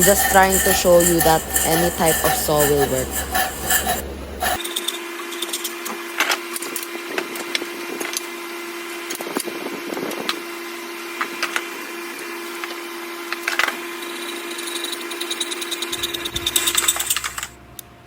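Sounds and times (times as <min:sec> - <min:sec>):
steady low hum: 0:00.0 - 0:04.6.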